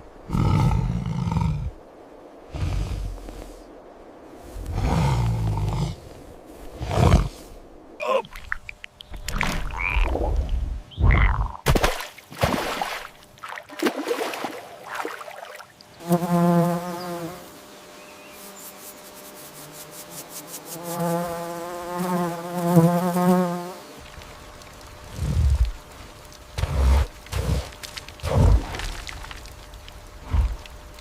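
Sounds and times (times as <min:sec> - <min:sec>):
flying insect buzzing: 0:15.9 - 0:31.0.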